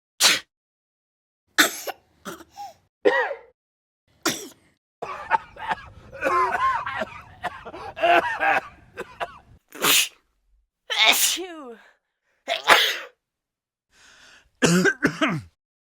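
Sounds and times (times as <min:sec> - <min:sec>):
person coughing: 0:01.6 - 0:03.5, 0:10.9 - 0:11.5, 0:12.5 - 0:13.2, 0:14.6 - 0:15.6.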